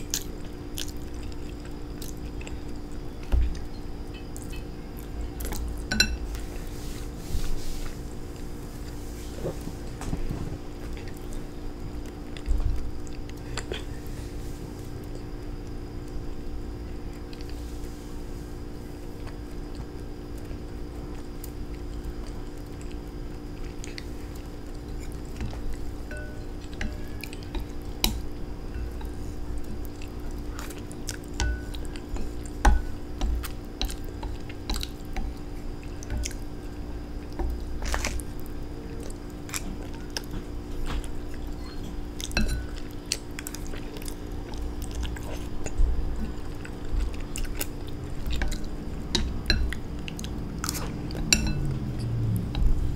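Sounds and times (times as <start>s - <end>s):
person chewing noodles: 0.0s - 6.8s, 19.0s - 52.9s
steady low hum: 0.0s - 52.9s.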